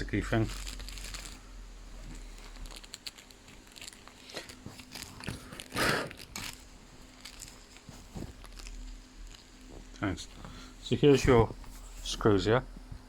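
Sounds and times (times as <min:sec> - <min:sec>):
plastic packet crinkling: 0:00.0 - 0:10.0
screws clicking in packet: 0:02.5 - 0:04.5.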